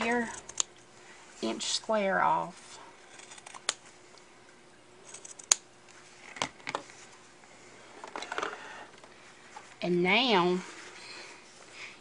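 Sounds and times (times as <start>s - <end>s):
scissors snipping fabric: 3.1s - 3.8s.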